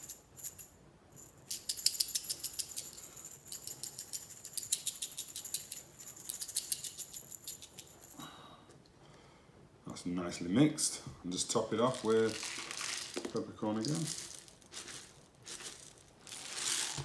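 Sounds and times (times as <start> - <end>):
peppercorns rattling in glass jar: 0.0 - 8.2, 11.7 - 17.0.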